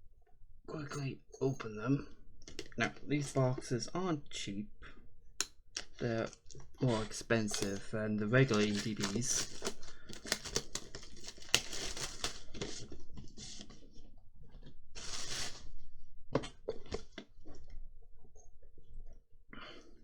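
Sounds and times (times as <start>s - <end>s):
plastic wrapping tearing and crinkling: 5.8s - 13.9s, 15.0s - 15.7s.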